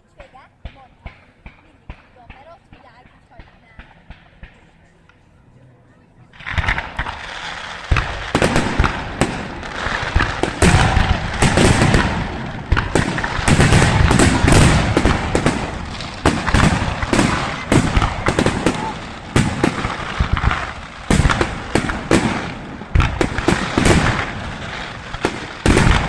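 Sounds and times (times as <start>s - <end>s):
fireworks bangs and crackling: 6.4s - 26.0s.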